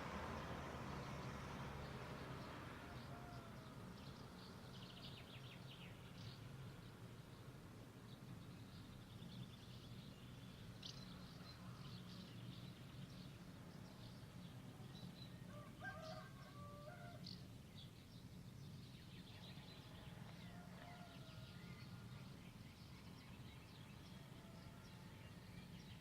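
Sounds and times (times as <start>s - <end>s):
small birds chirping: 4.0s - 26.0s.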